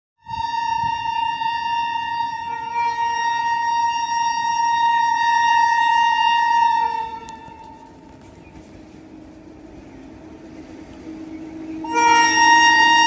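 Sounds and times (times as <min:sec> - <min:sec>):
twin-tone locomotive air horn: 0:00.2 - 0:08.2, 0:11.0 - 0:13.0.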